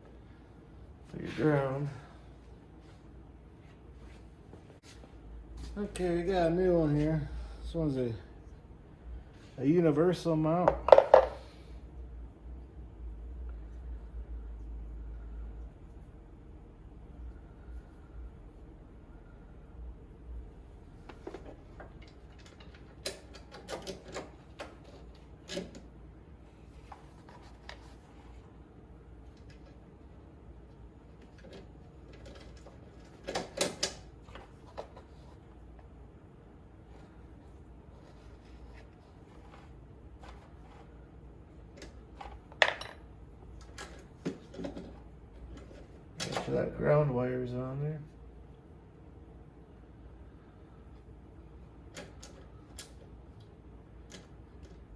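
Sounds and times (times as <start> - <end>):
faint low hum: 0.0 - 54.9.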